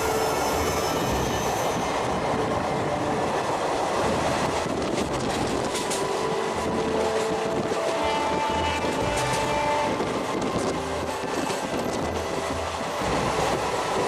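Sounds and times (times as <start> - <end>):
train wheels rumbling on rail: 0.0 - 14.0.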